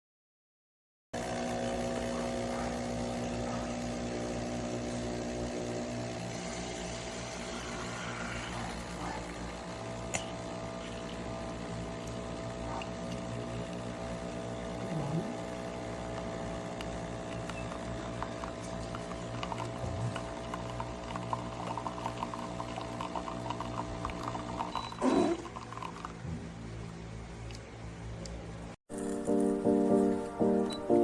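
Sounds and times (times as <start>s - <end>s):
coffee maker pump humming: 1.2s - 27.7s.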